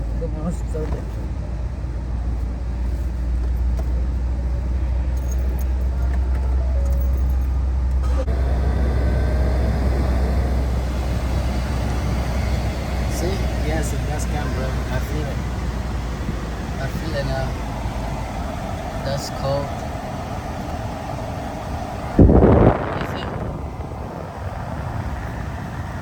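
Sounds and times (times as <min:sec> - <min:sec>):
car engine rumbling: 0:00.0 - 0:26.0
ac blower rushing air: 0:08.0 - 0:26.0.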